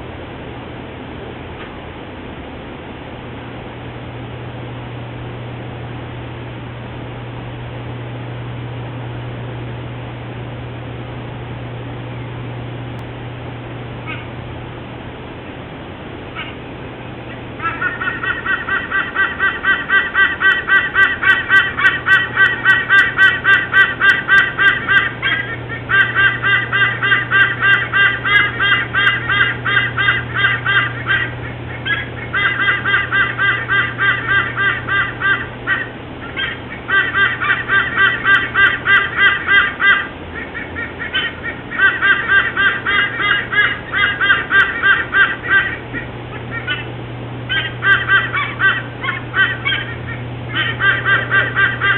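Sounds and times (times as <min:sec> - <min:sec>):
eagle honking calls: 0:14.0 - 0:14.4, 0:16.3 - 0:51.9.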